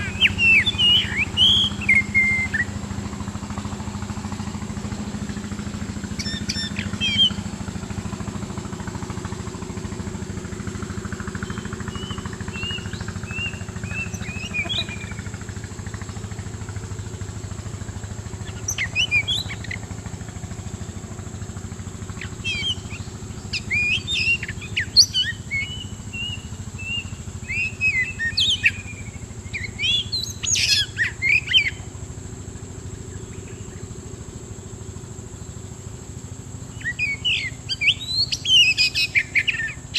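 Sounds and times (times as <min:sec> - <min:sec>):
bird singing whistled phrases: 0:00.0 - 0:02.8, 0:06.2 - 0:07.4, 0:11.4 - 0:15.2, 0:18.5 - 0:19.8, 0:22.3 - 0:31.8, 0:36.7 - 0:39.9
steady low hum: 0:00.0 - 0:39.9.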